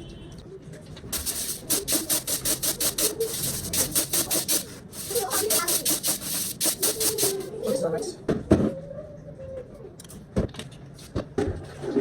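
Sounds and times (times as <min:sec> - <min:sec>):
rasping strokes: 0:01.2 - 0:07.8.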